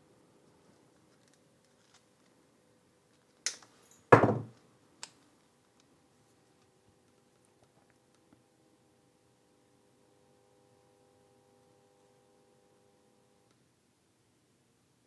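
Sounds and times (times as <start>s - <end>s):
tool clunk on workbench: 4.1s - 4.5s.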